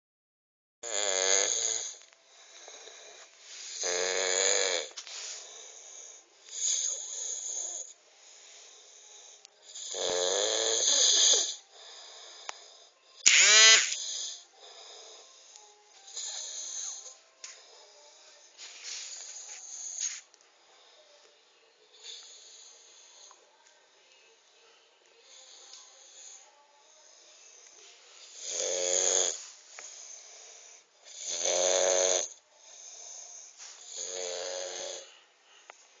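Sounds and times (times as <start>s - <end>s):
person snoring: 0.8s - 8.0s, 8.8s - 18.1s, 28.2s - 35.2s
quiet breathing: 1.5s - 10.0s, 10.6s - 13.2s, 14.0s - 36.0s
loud pitched snort: 13.2s - 14.4s.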